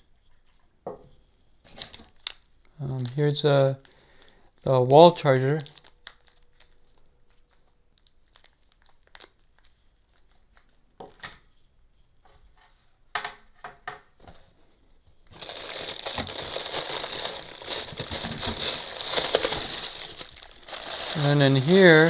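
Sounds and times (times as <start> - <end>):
packaging clicks and rustles: 5.6 - 10.7, 15.3 - 22.0
wrapping crinkling: 5.6 - 10.8, 15.3 - 22.0.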